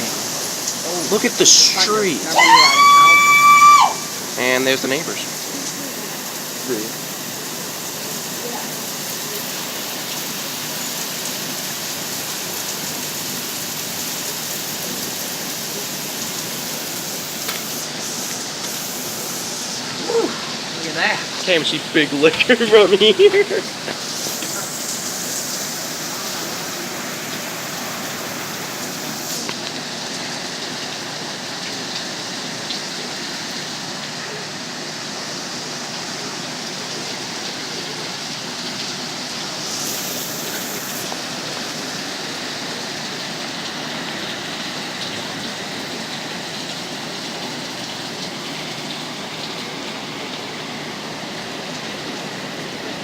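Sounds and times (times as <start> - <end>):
bright high hiss: 0.0 - 7.5, 39.4 - 43.5
heavy rain falling: 0.0 - 53.0.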